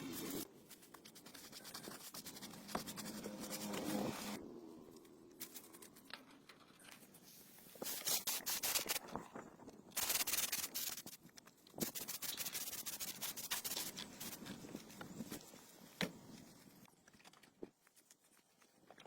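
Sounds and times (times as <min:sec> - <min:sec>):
rapid sanding strokes: 0:00.0 - 0:04.4, 0:10.0 - 0:11.2, 0:11.8 - 0:14.4.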